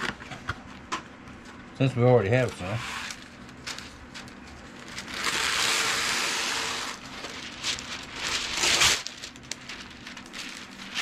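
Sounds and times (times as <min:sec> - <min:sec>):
wax paper rustling and crinkling: 0:02.4 - 0:11.0.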